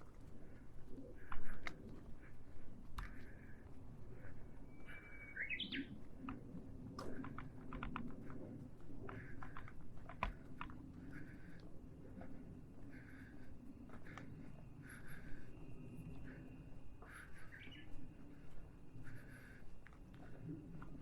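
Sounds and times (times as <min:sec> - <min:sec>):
footsteps on path: 0:00.0 - 0:21.0
birds chirping and calling: 0:04.2 - 0:06.0, 0:12.3 - 0:19.7
whistled bird call: 0:04.7 - 0:05.9.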